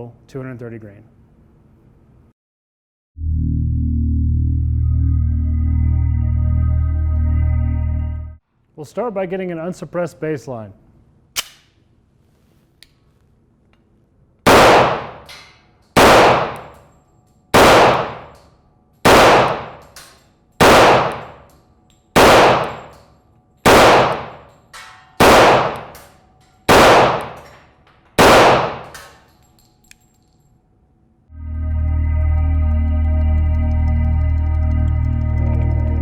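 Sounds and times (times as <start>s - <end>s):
pistol shots with echo: 14.5s - 16.9s, 17.6s - 21.6s, 22.2s - 29.4s.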